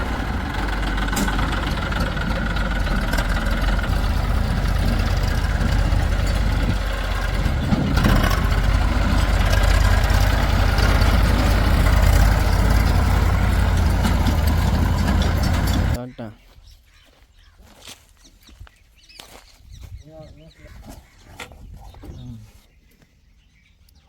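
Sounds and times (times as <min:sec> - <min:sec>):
heavy diesel engine running: 0:00.0 - 0:16.0.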